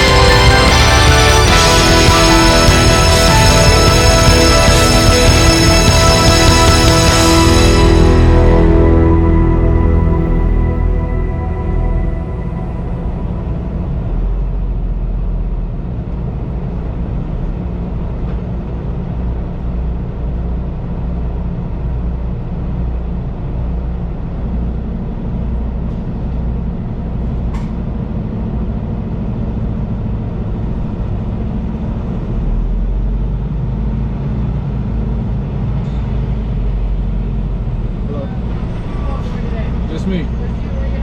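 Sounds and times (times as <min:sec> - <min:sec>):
truck diesel engine running: 0:00.0 - 0:15.8.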